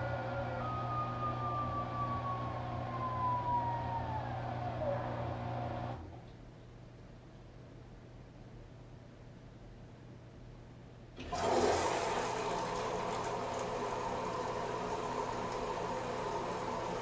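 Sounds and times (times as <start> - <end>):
washing machine winding down: 0.0 - 6.0, 11.2 - 17.0.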